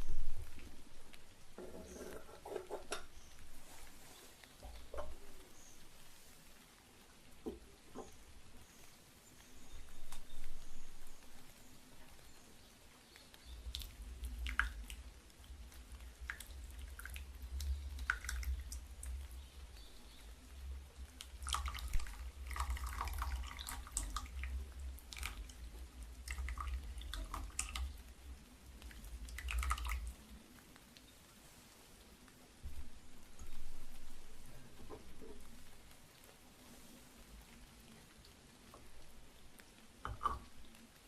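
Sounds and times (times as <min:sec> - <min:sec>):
low steady rumble: 0:00.0 - 0:01.8
water trickling and dripping: 0:00.0 - 0:41.0.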